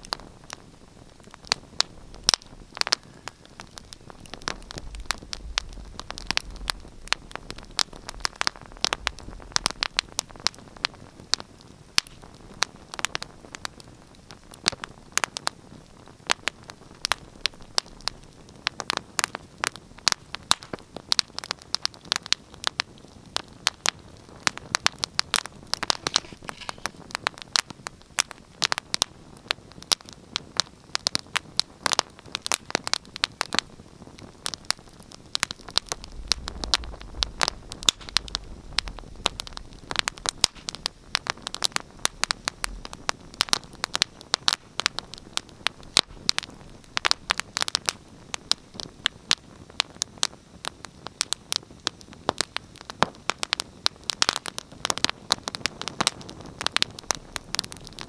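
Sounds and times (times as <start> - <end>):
wood fire crackling and popping: 0.0 - 58.0
low rumble: 4.2 - 10.3, 35.4 - 41.2.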